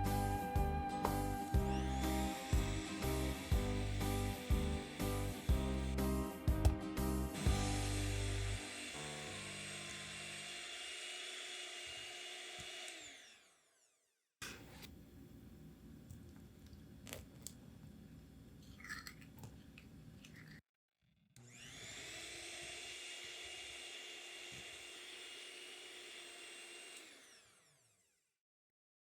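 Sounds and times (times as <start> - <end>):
electric hand mixer running: 0.0 - 14.0, 21.4 - 28.3.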